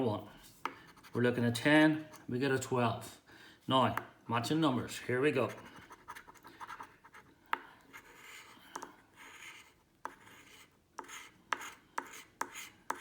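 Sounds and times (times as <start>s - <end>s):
scratchcard rasping scrapes: 7.9s - 13.0s.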